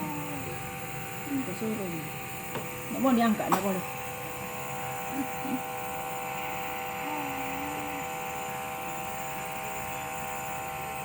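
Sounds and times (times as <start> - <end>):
child vocal sound: 0.0 - 0.6, 5.1 - 5.7, 7.0 - 8.4
nebulizer compressor humming: 0.0 - 11.0.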